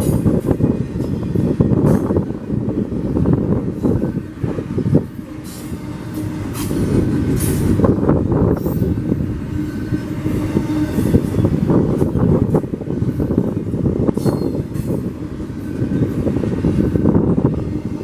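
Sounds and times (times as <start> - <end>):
train cars rolling past: 0.0 - 18.0
wind noise on microphone: 0.0 - 18.0
high wheel squeals: 14.1 - 15.0.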